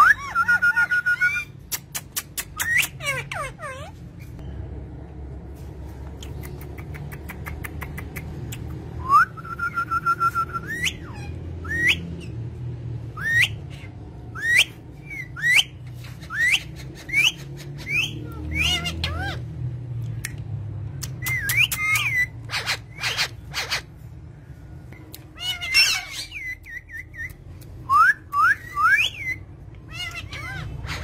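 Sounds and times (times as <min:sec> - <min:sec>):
parrot whistling: 0:00.0 - 0:01.6, 0:09.0 - 0:12.3, 0:13.2 - 0:19.4, 0:21.2 - 0:23.9, 0:25.4 - 0:31.0
parrot upward-sweeping chirps: 0:13.1 - 0:19.5, 0:25.3 - 0:27.3.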